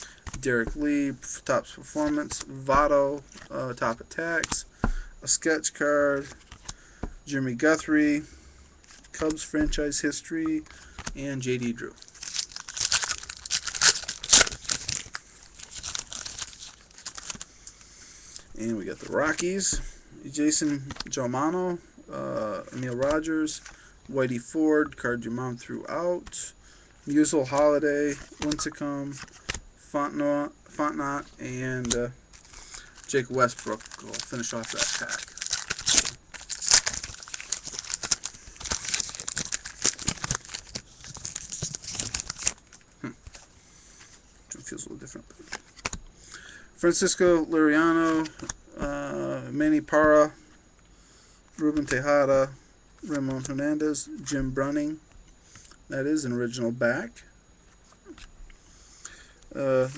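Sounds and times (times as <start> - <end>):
foil wrapper tearing and crinkling: 12.0 - 17.5, 32.4 - 42.8.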